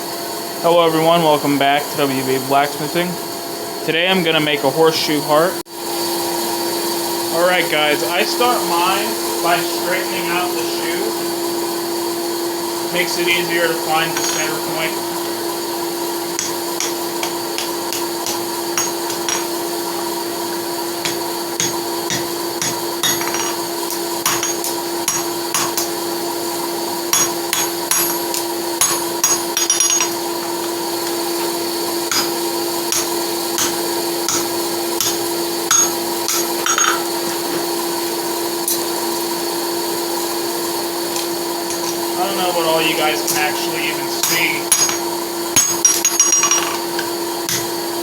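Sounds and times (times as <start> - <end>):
forge blower humming: 0.0 - 48.0
hammer striking metal on anvil: 14.1 - 14.8, 16.4 - 19.5, 21.0 - 23.6, 24.2 - 25.9, 27.1 - 30.2, 32.1 - 37.0, 44.2 - 47.7.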